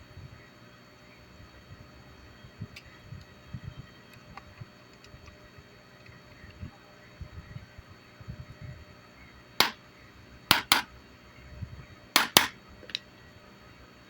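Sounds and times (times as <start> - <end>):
sharp knocks on motor housing: 9.6 - 9.8, 10.5 - 10.9, 12.2 - 13.0.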